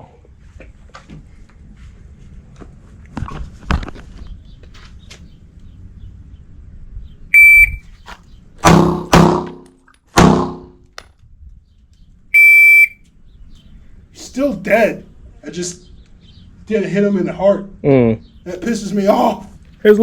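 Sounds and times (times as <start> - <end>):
electronic timer beep: 7.3 - 7.8, 12.4 - 13.0.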